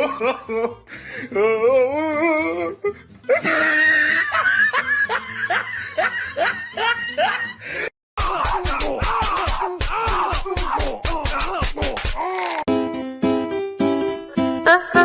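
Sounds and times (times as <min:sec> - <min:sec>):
person laughing hard: 0:00.0 - 0:00.9, 0:03.3 - 0:09.0.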